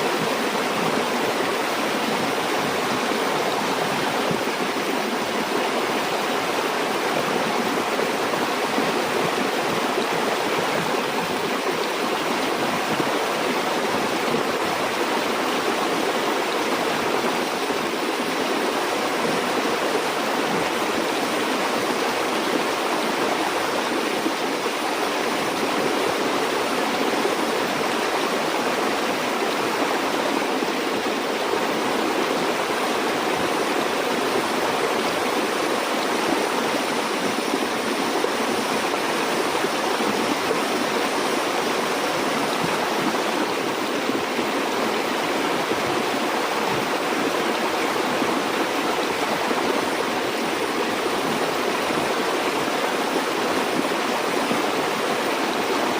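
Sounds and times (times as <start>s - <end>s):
stream water over rocks: 0.0s - 55.9s.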